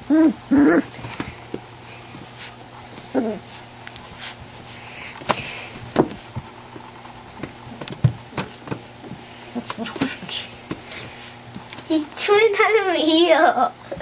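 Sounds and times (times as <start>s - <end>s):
puppy whine: 0.0s - 1.4s, 2.8s - 4.0s.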